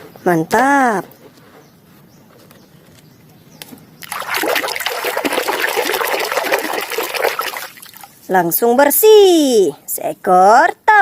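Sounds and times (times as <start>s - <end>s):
water splashing on plastic toy: 4.0s - 8.2s.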